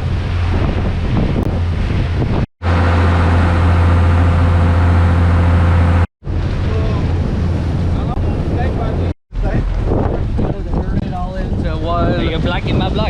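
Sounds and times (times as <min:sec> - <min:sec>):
boat engine droning: 0:00.0 - 0:09.9
wind buffeting microphone: 0:00.0 - 0:13.0.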